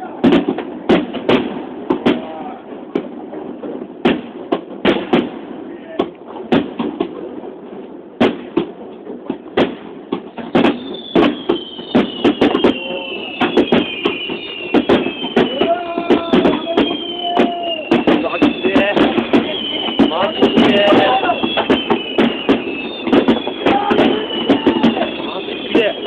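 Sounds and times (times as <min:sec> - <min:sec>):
fireworks bangs: 0:00.0 - 0:26.0
firework whistles falling in pitch: 0:09.6 - 0:26.0
crowd voices: 0:12.7 - 0:26.0.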